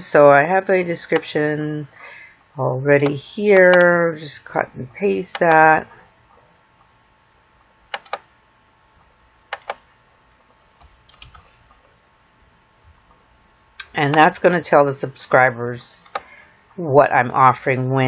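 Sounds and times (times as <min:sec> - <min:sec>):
keyboard and mouse clicks: 0:07.9 - 0:08.3, 0:09.5 - 0:09.9, 0:10.8 - 0:11.5, 0:16.0 - 0:16.3.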